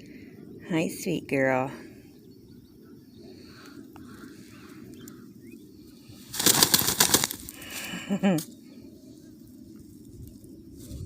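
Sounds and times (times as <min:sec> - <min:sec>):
faint outdoor background: 0:00.0 - 0:11.0
rustling flapping burst: 0:06.3 - 0:07.9.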